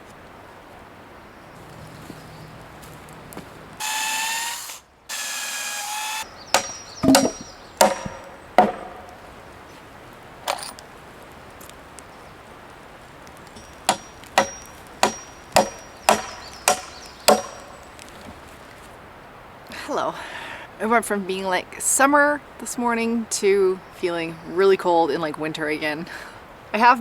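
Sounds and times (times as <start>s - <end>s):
power drill running: 3.8s - 6.3s
hammer striking wood: 5.3s - 9.2s, 13.6s - 17.8s.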